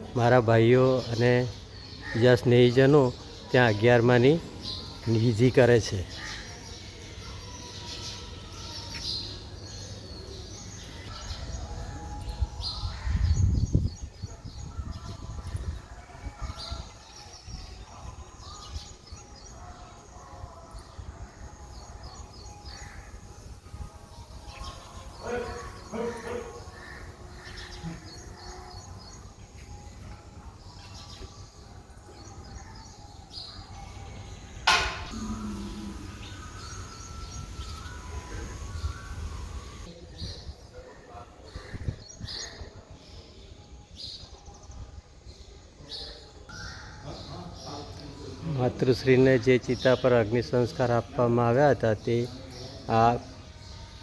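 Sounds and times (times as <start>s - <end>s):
birds chirping: 0.0s - 44.7s
sharp knock: 34.7s - 35.1s.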